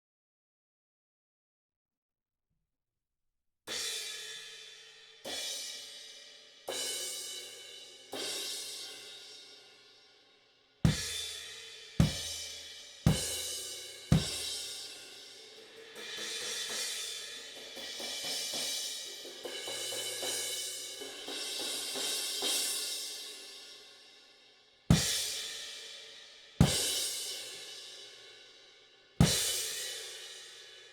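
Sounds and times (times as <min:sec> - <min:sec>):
bass drum kick: 0:12.0 - 0:12.4, 0:13.1 - 0:13.4, 0:14.1 - 0:14.5.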